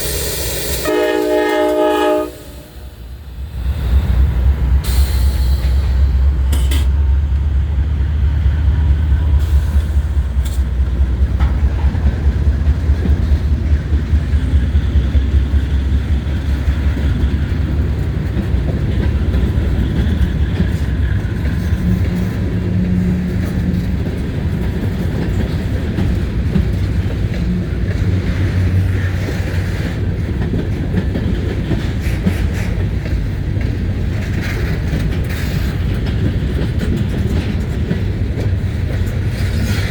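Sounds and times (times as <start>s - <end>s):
diesel locomotive rumble: 0.0s - 39.9s
freight cars rolling and clattering: 10.4s - 39.9s.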